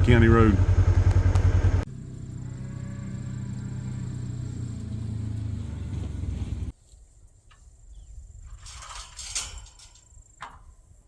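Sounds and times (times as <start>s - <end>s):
vehicle engine running: 0.0s - 6.7s.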